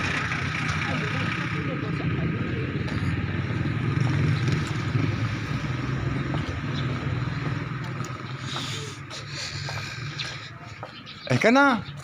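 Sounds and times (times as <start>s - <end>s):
vehicle engine running: 0.0s - 11.2s.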